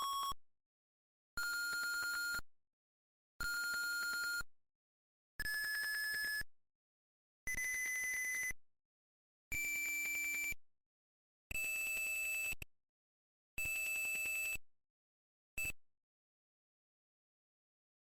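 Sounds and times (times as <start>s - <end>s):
piezo buzzer beeps: 3.4s - 4.4s, 7.5s - 8.5s, 9.6s - 10.6s.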